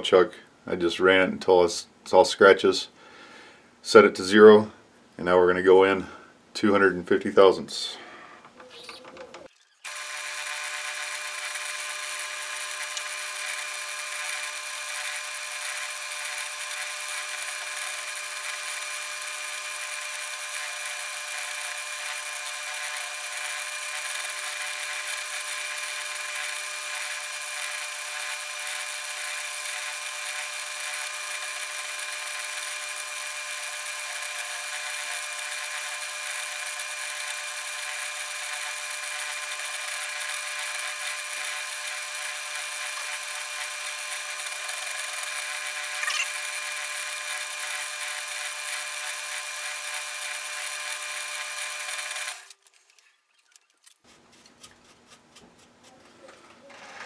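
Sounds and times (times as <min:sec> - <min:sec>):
lathe milling attachment whining: 0:09.9 - 0:52.6.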